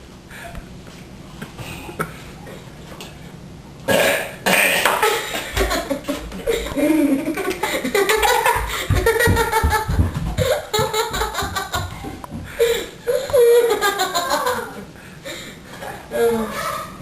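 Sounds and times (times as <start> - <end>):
children burping: 3.9 - 5.5
children laughing loudly: 4.9 - 14.9.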